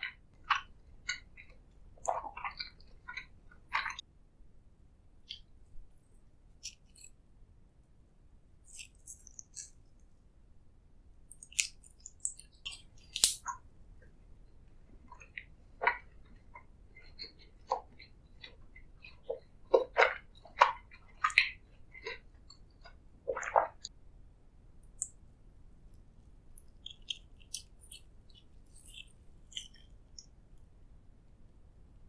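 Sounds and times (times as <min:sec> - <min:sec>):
wet squishy chewing: 0:00.0 - 0:04.0, 0:11.3 - 0:13.6, 0:15.1 - 0:23.9, 0:26.6 - 0:30.4
crisp clicks: 0:11.3 - 0:13.6, 0:26.6 - 0:30.7.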